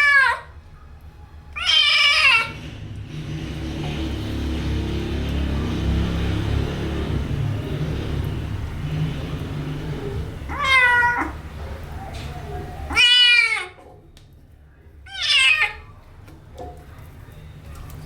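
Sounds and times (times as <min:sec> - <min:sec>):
kitten meowing: 0:10.5 - 0:11.4, 0:12.9 - 0:13.8.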